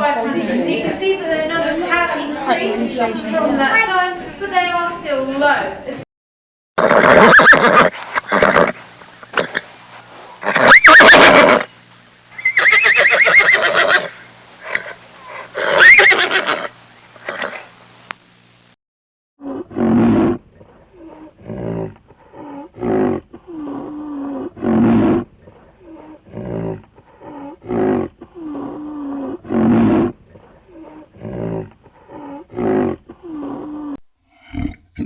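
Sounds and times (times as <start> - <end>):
big cat roaring: 19.4 - 35.0.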